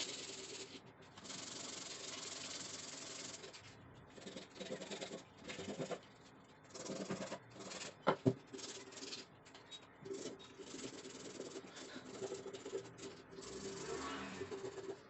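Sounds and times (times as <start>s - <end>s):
scraping strokes on metal: 7.6s - 15.0s.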